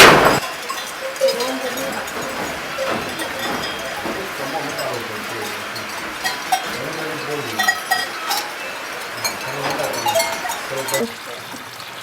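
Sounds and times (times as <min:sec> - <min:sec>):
metal bells clinking: 0:00.0 - 0:11.4
goats bleating: 0:00.8 - 0:11.3.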